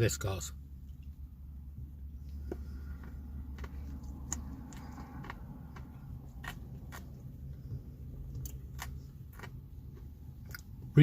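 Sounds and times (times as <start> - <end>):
low hum inside car: 0.0 - 11.0
person eating: 2.4 - 7.6.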